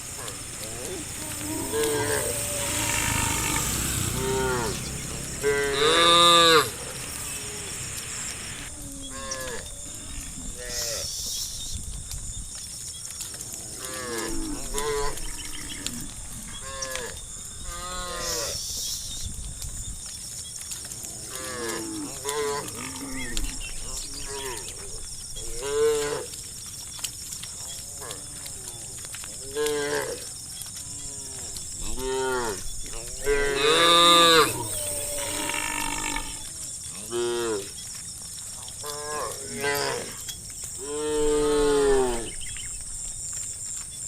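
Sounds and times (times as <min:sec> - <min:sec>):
cattle mooing: 0:00.0 - 0:09.7, 0:30.9 - 0:37.7.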